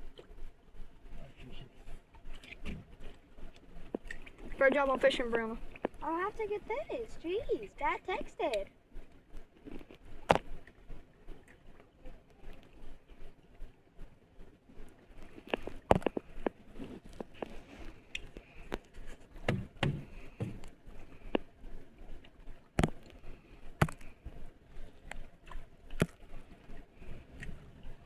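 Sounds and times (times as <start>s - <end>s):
dull thumps: 19.4s - 20.8s
sharp knocks and clicks: 19.4s - 20.8s, 22.8s - 23.1s.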